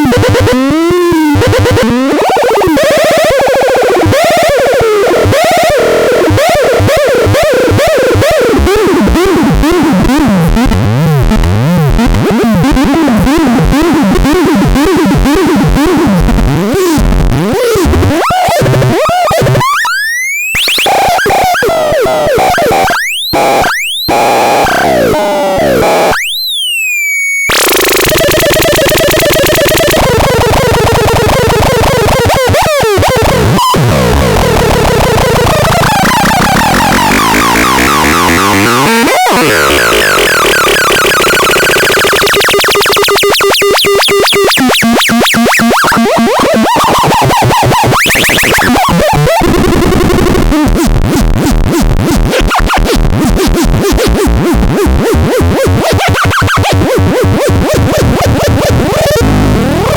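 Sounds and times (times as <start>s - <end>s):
warbling synthesizer tones: 18.5s - 50.6s, 55.1s - 59.9s
fast stuttering synth pulse: 27.5s - 32.2s, 34.0s - 47.0s.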